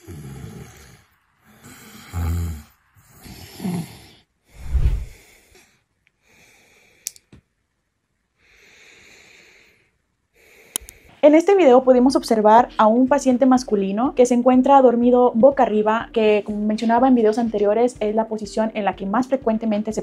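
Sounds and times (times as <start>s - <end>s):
man snoring: 0.0s - 4.2s
sharp clicks: 10.7s - 11.0s.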